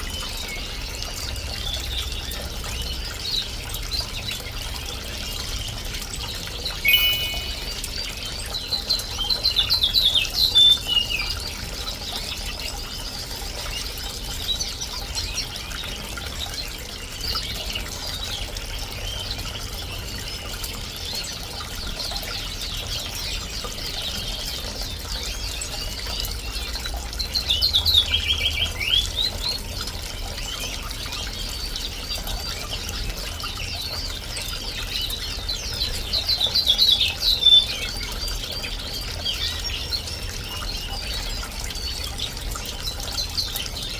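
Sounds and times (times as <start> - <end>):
small fountain trickling: 0.0 - 43.9
birds chirping and singing: 6.8 - 11.6.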